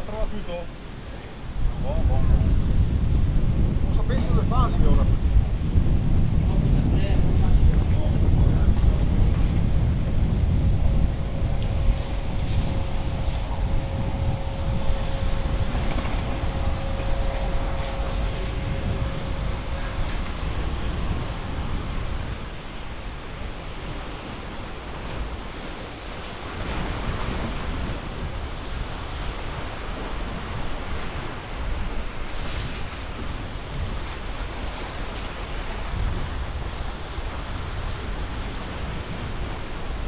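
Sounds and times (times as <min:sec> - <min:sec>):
wind buffeting microphone: 0:00.2 - 0:25.6.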